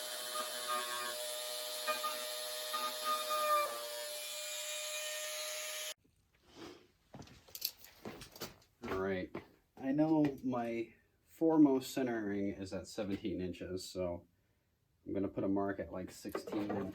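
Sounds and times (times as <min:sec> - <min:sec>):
power tool whining and grinding: 0:00.0 - 0:06.0.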